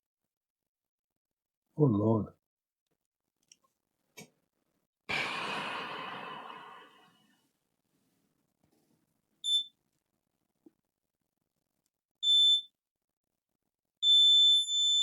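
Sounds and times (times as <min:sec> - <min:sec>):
person sighing: 0:05.1 - 0:07.3
short high-pitched multimeter beep: 0:09.4 - 0:09.7, 0:12.2 - 0:12.7, 0:14.0 - 0:15.0.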